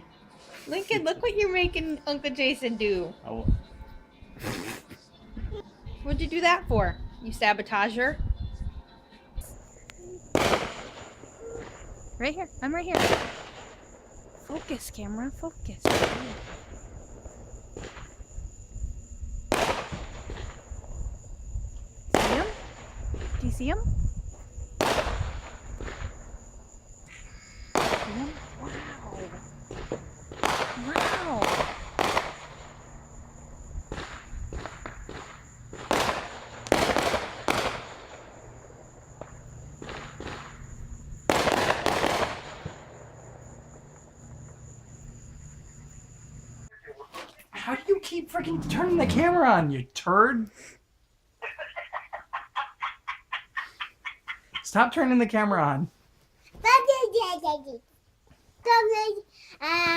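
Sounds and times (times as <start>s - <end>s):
fireworks bangs: 9.5s - 44.6s, 48.3s - 49.6s.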